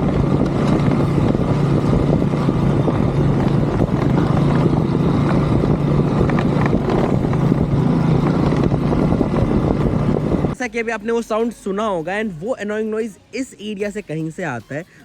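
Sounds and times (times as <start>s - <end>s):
rattling from motorcycle rear: 0.0s - 10.6s
motorcycle engine running: 0.0s - 12.9s.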